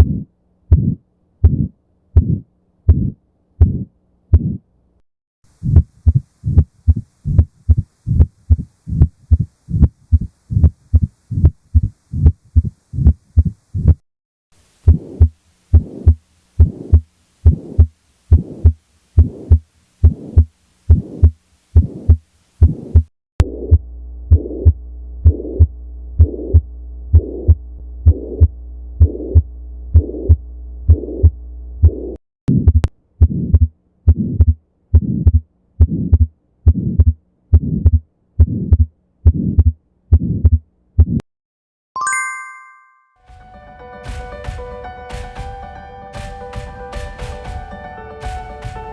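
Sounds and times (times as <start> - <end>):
heartbeat low thumps: 0.0 - 4.6, 5.5 - 14.0, 14.8 - 41.2
rushing heart murmur: 0.0 - 4.6, 5.6 - 14.0, 14.9 - 41.2
steady hum: 5.5 - 14.0, 14.6 - 38.9
chime ringing: 42.0 - 43.1
music: 43.2 - 48.9.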